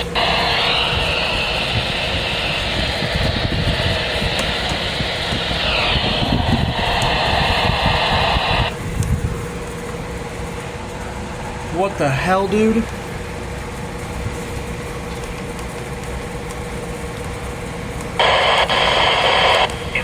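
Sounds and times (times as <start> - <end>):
radio static hiss: 0.0 - 8.8, 18.2 - 20.0
faint steady hum: 0.0 - 20.0.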